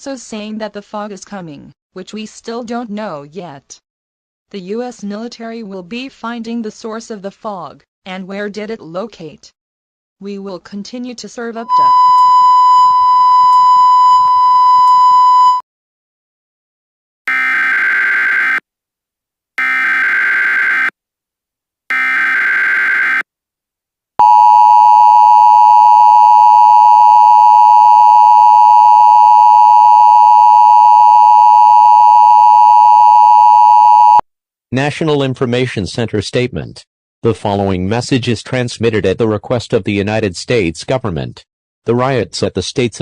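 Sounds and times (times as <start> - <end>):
alert header data bursts: 11.7 - 13.1
steady electronic beep tone: 11.7 - 15.6, 24.2 - 34.2
two-tone attention signal: 11.7 - 15.6, 24.2 - 34.2.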